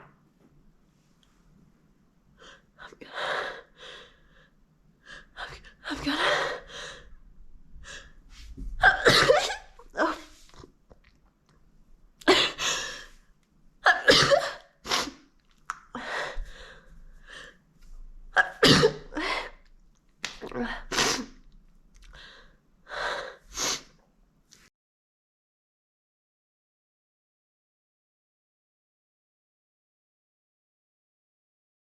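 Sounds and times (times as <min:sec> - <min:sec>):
woman sneezing: 0:08.8 - 0:10.3, 0:13.8 - 0:15.2, 0:18.4 - 0:19.4, 0:20.6 - 0:21.4.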